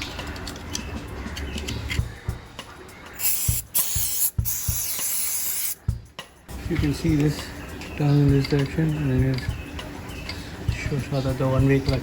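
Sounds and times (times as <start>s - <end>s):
spray hissing: 3.2s - 5.8s.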